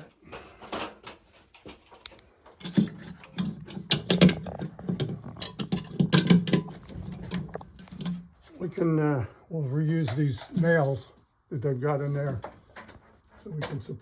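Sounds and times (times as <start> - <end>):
metallic rattling of hardware: 0.6 - 8.4.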